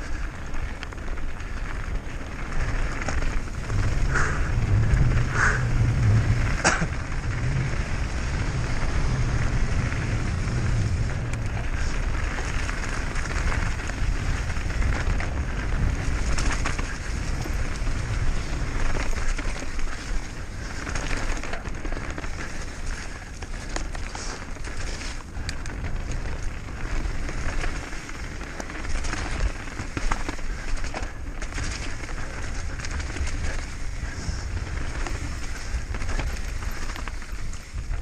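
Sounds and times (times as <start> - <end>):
bike tyres and frame rattling: 0.0 - 38.0
wind on microphone: 1.4 - 24.0.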